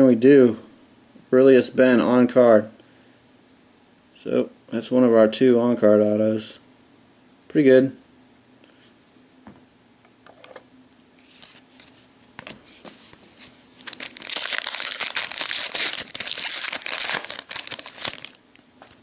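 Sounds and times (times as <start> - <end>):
wrapper tearing and crinkling: 13.8 - 19.0.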